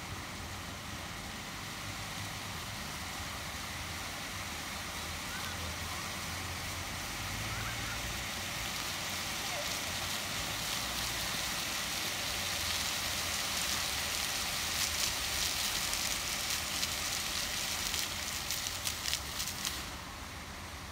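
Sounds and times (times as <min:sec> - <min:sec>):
fountain water rushing: 0:00.0 - 0:20.9
water splattering: 0:04.8 - 0:20.0.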